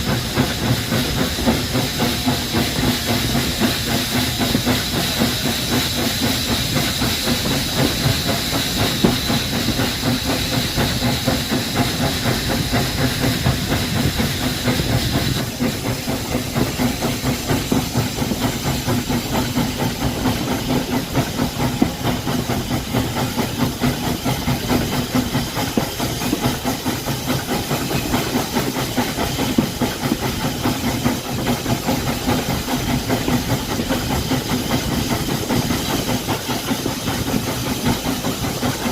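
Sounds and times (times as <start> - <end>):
steam locomotive hissing: 0.0 - 38.9.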